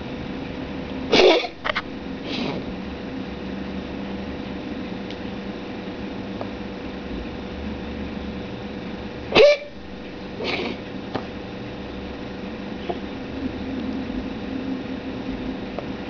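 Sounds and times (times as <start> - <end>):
household hum: 0.0 - 16.0
cat coughing: 1.1 - 1.6, 9.3 - 9.8, 10.4 - 10.8.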